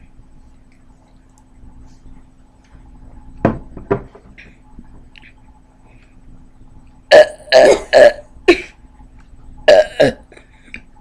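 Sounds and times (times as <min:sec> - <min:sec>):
boy burping: 0:07.1 - 0:08.7, 0:09.7 - 0:10.4.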